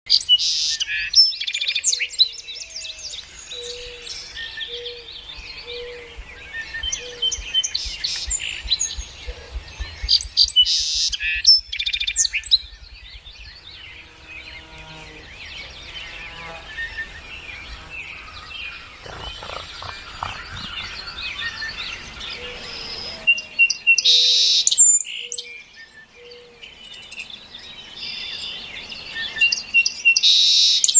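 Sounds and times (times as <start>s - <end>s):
birds chirping: 0.1s - 24.1s.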